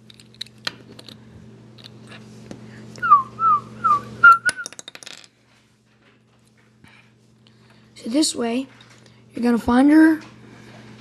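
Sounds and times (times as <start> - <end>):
person whistling short notes: 3.0 - 4.7.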